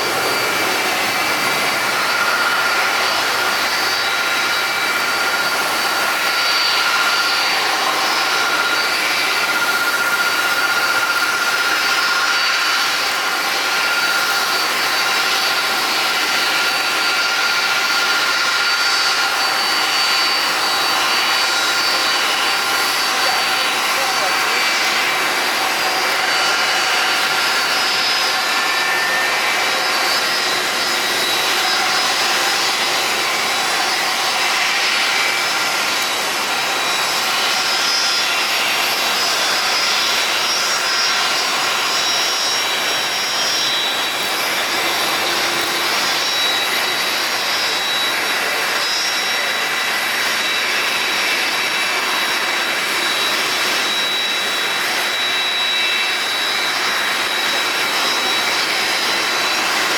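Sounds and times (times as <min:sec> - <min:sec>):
high-pitched engine whines: 0:00.0 - 0:59.9
jet engines running: 0:00.0 - 0:59.9.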